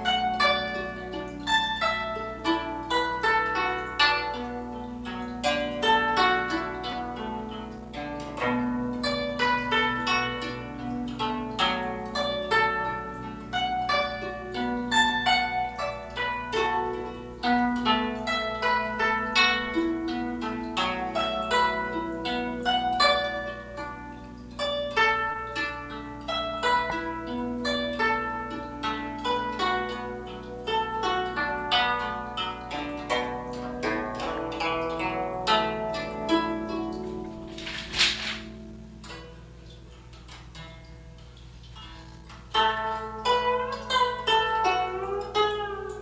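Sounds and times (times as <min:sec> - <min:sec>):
plucked zither melody: 0:00.0 - 0:46.0.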